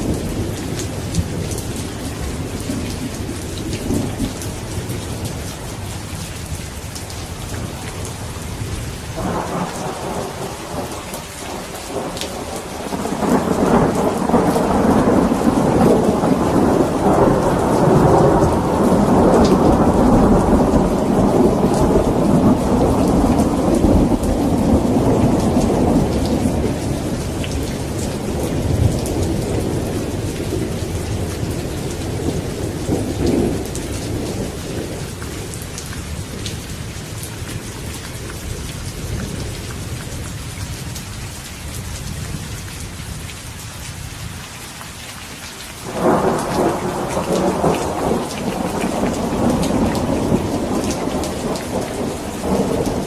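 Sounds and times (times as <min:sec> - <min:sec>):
steady rain: 0:00.0 - 0:53.0
rolling thunder: 0:07.5 - 0:37.4, 0:45.8 - 0:53.0.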